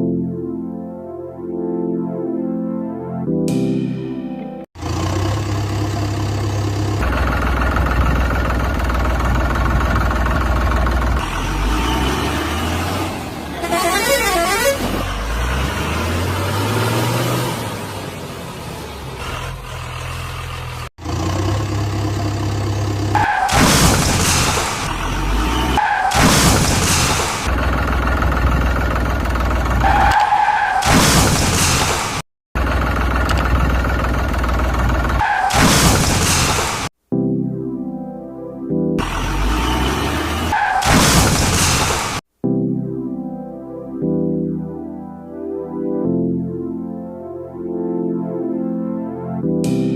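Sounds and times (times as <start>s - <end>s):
heavy vehicle engine rumbling: 4.8s - 30.2s, 30.8s - 36.9s, 39.0s - 42.2s
truck horn honks: 12.9s - 15.8s.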